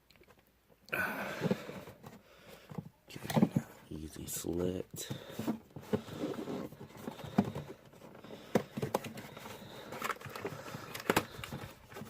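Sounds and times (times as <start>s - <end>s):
packaging taps clicks and rustles: 6.9s - 12.0s.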